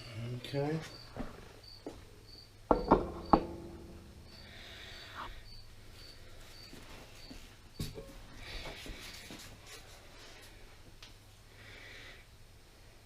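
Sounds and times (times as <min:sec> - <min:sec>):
sharp metallic clanks: 0:02.7 - 0:05.3.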